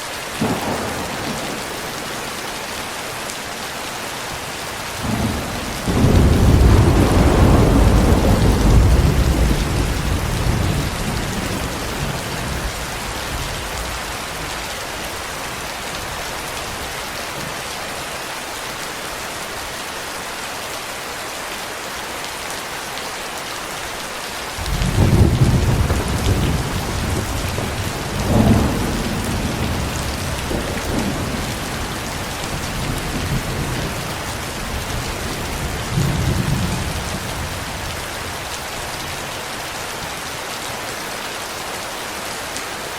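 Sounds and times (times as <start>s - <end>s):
steady rain: 0.0s - 42.9s
rolling thunder: 0.4s - 2.8s, 4.8s - 15.2s, 24.6s - 38.5s
sharp thunder clap: 5.0s - 12.8s.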